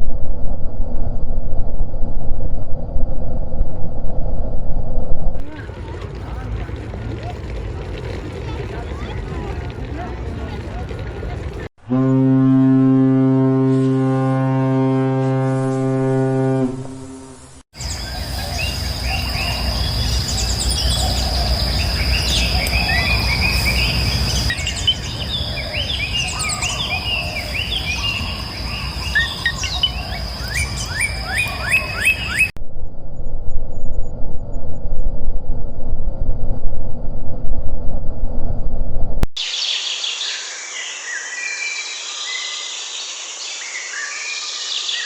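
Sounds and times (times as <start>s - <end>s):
deep ship's horn: 11.8s - 17.6s
birds chirping and calling: 17.8s - 32.5s.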